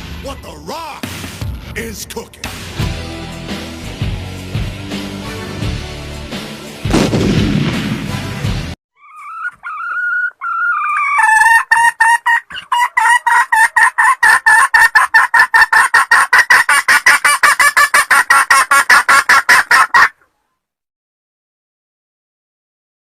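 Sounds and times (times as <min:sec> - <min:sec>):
hen cackling: 0:09.0 - 0:20.2.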